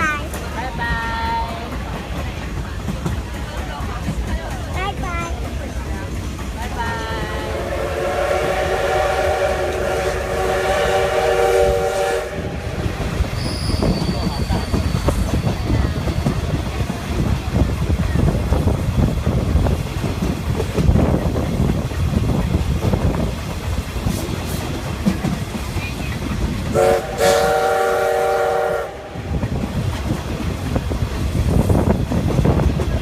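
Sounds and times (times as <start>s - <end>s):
train rumble with rail clatter: 0.0s - 33.0s
steam whistle blasts: 7.2s - 12.7s, 26.7s - 29.2s.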